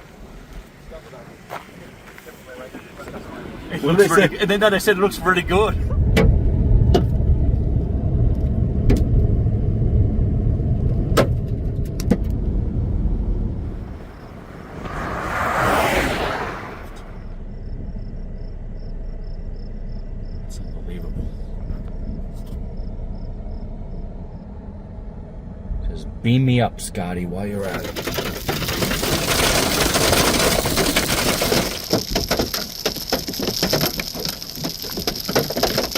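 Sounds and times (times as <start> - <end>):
car road rumble: 0.0 - 35.9
hail pelting down: 27.6 - 35.9.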